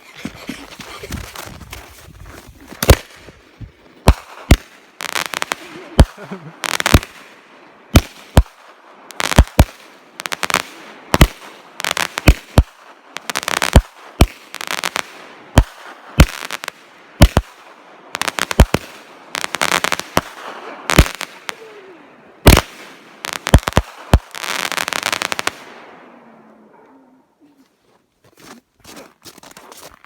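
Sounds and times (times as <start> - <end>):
fireworks crackling: 0.0 - 25.9
fireworks banging: 2.7 - 21.8, 22.4 - 25.9.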